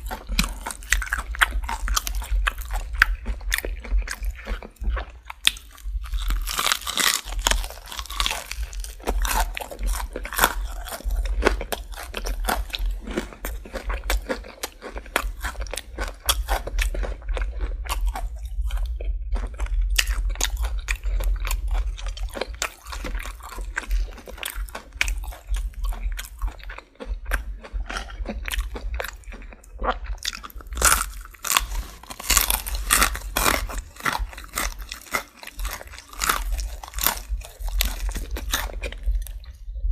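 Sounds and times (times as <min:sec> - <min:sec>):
crunching fried chicken: 0:00.0 - 0:39.6
wet chewing: 0:00.0 - 0:39.6.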